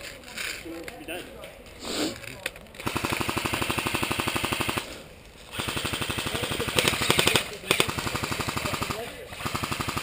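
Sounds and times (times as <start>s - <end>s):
airsoft rifle firing bursts: 2.8s - 10.0s.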